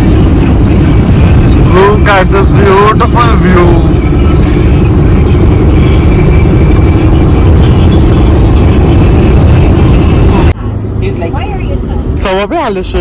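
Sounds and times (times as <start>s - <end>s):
car road and wind noise: 0.0s - 13.0s.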